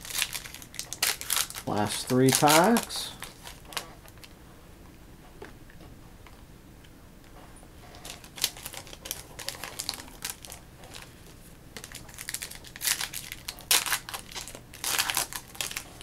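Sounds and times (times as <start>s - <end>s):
wrapper tearing and crinkling: 0.0s - 4.3s, 8.0s - 16.0s.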